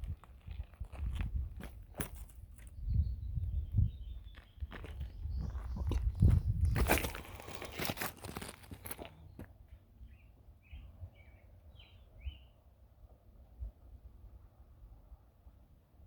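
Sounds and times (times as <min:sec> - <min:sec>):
bird chirping: 0:02.8 - 0:07.0, 0:10.0 - 0:12.6.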